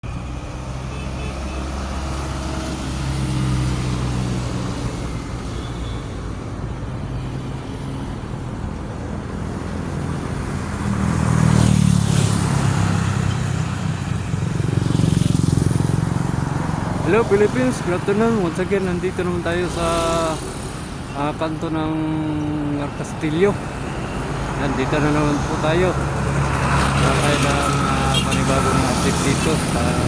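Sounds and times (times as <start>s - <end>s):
vehicle engines running: 10.4s - 30.0s
vehicle passing close: 10.6s - 20.9s, 24.4s - 30.0s.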